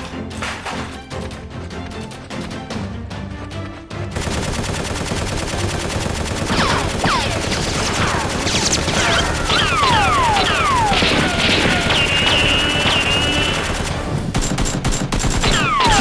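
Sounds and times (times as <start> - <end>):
rapid automatic gunfire: 4.2 - 16.0.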